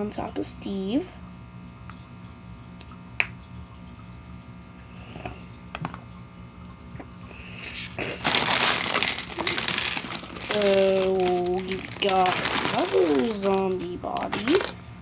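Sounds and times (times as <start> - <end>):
rummaging through loose pieces: 8.2 - 14.8.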